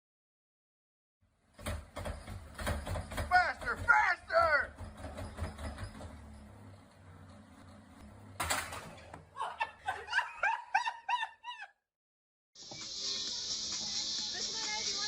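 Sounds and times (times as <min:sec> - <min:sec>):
person laughing: 0:09.4 - 0:11.8.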